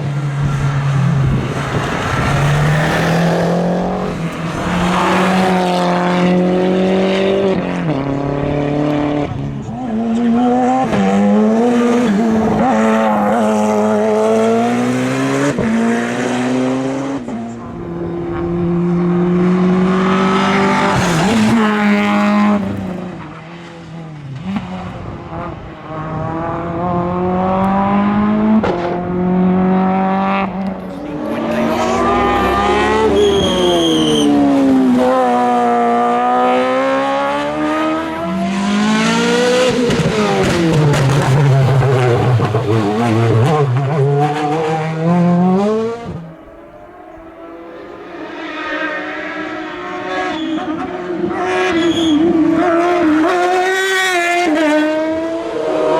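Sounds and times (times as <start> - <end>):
race car engines revving: 0.0 - 55.9
tyre squeal: 31.7 - 34.6, 48.4 - 52.8.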